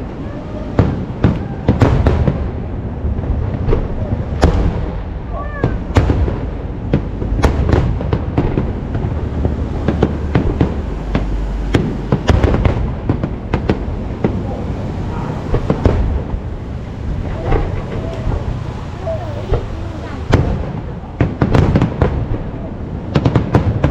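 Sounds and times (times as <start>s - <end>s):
low rumble of echoing explosions: 0.0s - 23.9s
firework shell bursts and bangs: 3.2s - 14.4s, 19.3s - 22.5s.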